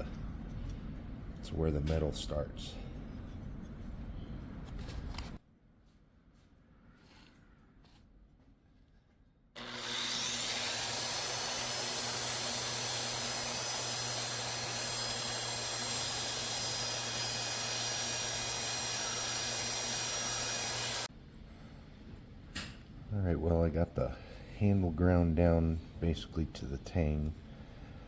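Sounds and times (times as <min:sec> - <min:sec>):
belt sander grinding wood: 0:09.6 - 0:21.1.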